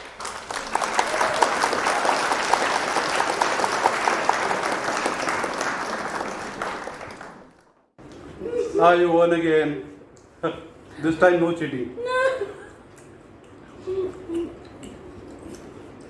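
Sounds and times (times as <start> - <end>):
large audience clapping: 0.0 - 7.8.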